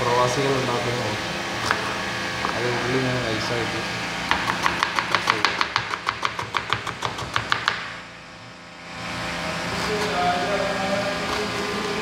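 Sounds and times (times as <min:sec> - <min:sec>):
knife chopping onion: 0:04.3 - 0:07.9.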